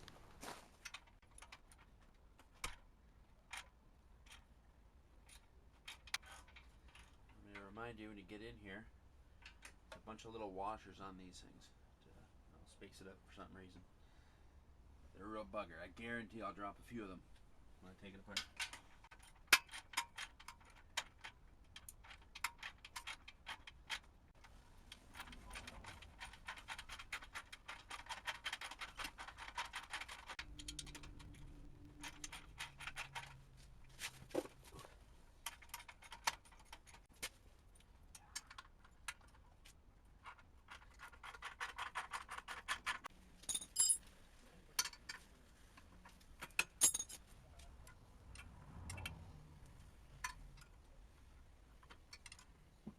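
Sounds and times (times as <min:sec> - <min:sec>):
metal clinks and knocks: 0:25.1 - 0:37.2, 0:40.2 - 0:44.1, 0:46.4 - 0:49.2.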